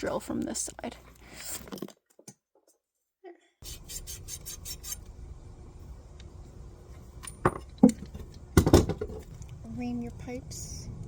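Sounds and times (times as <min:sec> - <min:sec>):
tool scraping copper pipe: 0:03.6 - 0:05.1.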